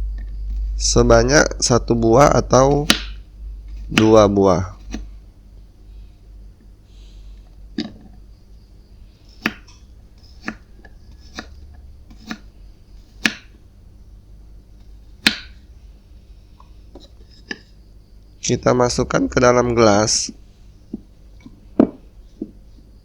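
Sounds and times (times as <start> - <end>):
knife tapping board: 2.7 - 3.2, 3.9 - 4.2, 11.2 - 11.5, 13.2 - 13.6, 15.2 - 15.6
knife slicing fruit: 2.7 - 5.1, 9.3 - 13.6.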